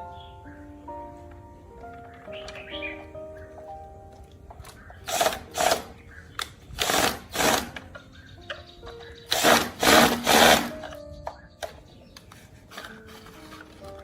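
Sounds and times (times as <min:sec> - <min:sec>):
tool bursts of harsh noise: 0:06.8 - 0:07.8, 0:09.3 - 0:10.8.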